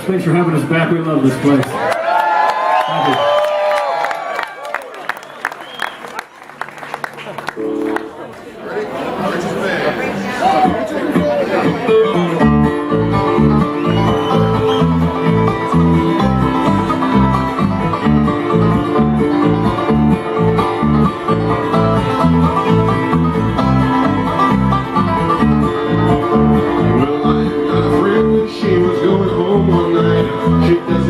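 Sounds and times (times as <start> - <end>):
guitar picking: 7.5 - 8.5, 10.5 - 31.0
banjo picking: 10.4 - 31.0
alternating bass line: 10.7 - 31.0.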